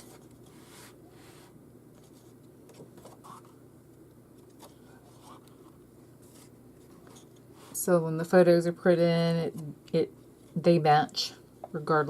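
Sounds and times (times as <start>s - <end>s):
low room hum: 0.0s - 12.0s
paper pages brushing: 4.6s - 7.8s.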